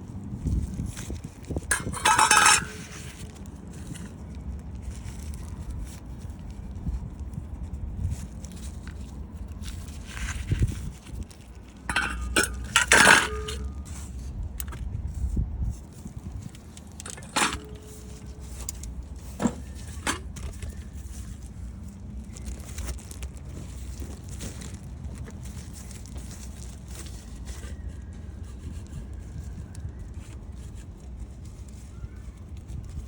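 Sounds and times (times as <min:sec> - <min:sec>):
metal tools clanking on car parts: 0:01.7 - 0:03.3, 0:11.8 - 0:14.8, 0:16.4 - 0:20.8.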